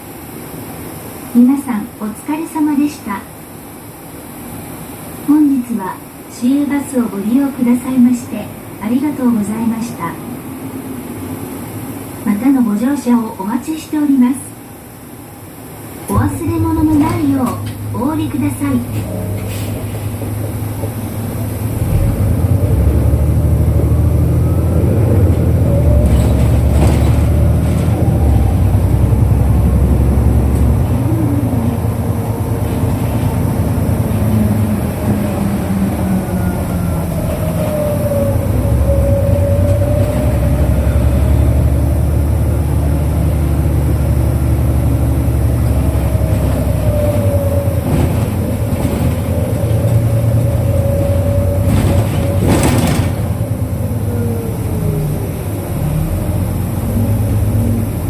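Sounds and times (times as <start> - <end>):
bus engine running: 14.7 - 58.0.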